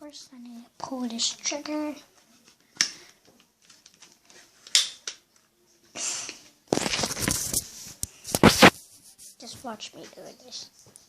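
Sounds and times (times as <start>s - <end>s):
rustling handling noise: 6.5s - 11.0s.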